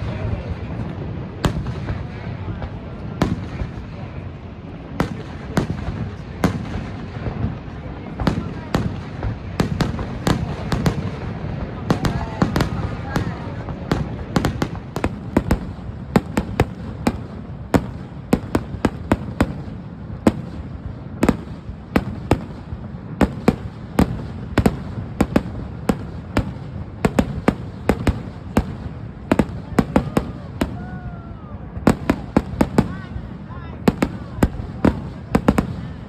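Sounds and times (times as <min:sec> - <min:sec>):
fireworks bangs and cracks: 0:00.0 - 0:36.0.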